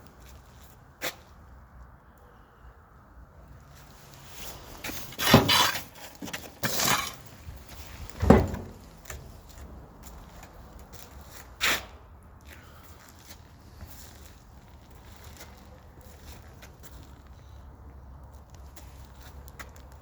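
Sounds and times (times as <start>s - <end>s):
refrigerator knocks and rattles: 8.2s - 8.8s
heavy thump: 8.2s - 8.9s.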